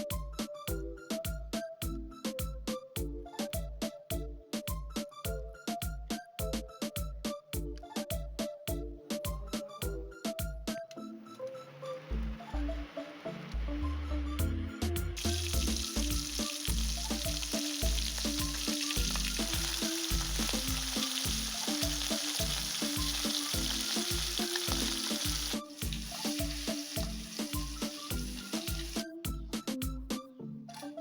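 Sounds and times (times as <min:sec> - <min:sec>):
background music with steady beat: 0:00.0 - 0:31.0
fish sizzling in hot oil: 0:15.2 - 0:29.0.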